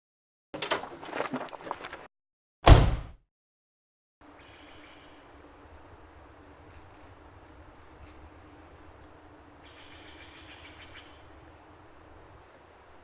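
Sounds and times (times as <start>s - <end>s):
loud deep hit: 2.7s - 3.2s
faint background ambience: 4.2s - 13.0s.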